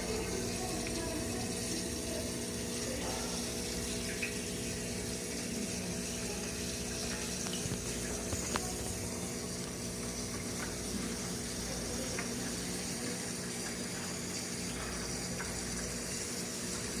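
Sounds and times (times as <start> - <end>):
water splashing and trickling: 0.0 - 17.0.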